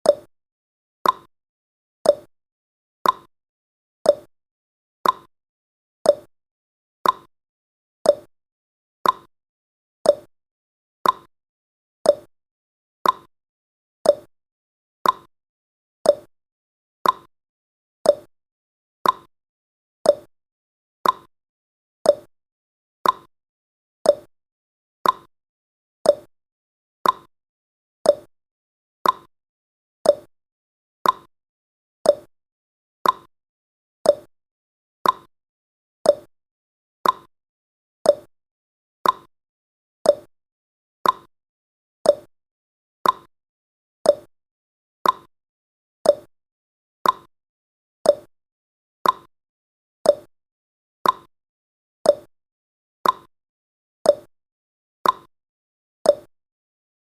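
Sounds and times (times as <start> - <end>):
clock ticking: 35.0 - 35.3, 37.0 - 37.3, 41.0 - 41.3, 43.0 - 43.3, 45.0 - 45.3, 47.0 - 47.3, 49.0 - 49.3.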